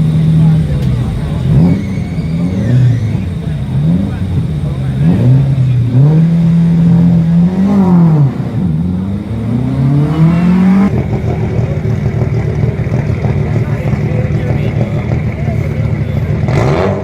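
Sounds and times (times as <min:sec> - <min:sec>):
rally car engine revving: 0:00.0 - 0:17.0.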